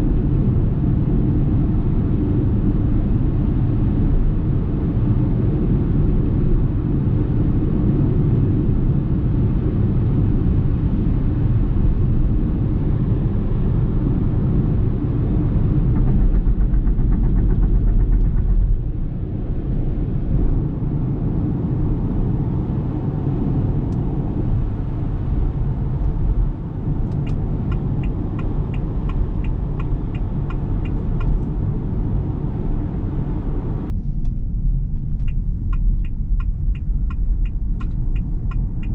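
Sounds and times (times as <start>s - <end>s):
tyre and road noise: 8.4s - 38.9s
regular ticking: 27.0s - 31.6s, 35.3s - 38.9s.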